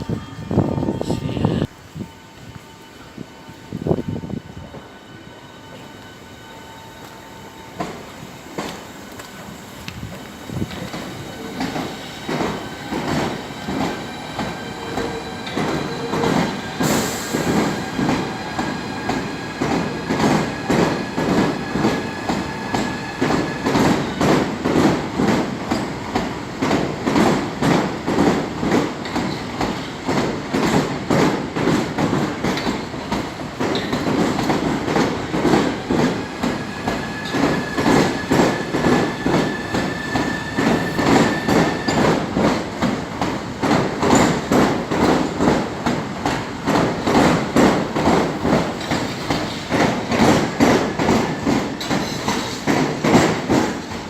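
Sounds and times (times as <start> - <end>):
train wheels clacking on rails: 7.0 - 54.0
high wheel squeal: 36.6 - 42.2.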